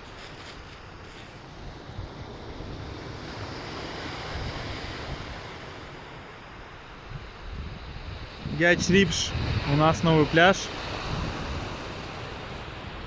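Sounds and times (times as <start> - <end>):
surf washing onto shore: 0.0 - 13.0
wind buffeting microphone: 1.3 - 13.0.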